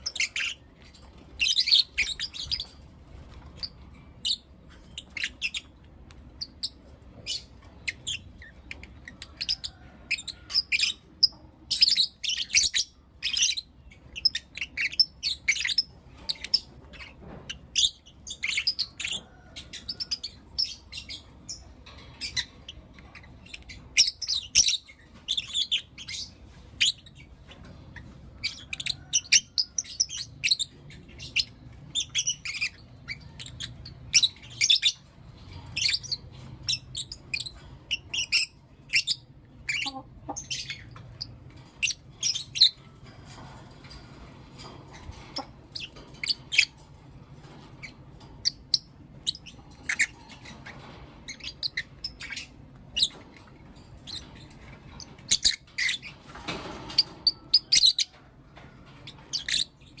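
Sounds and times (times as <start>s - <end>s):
lovebirds chirping: 0.0s - 60.0s.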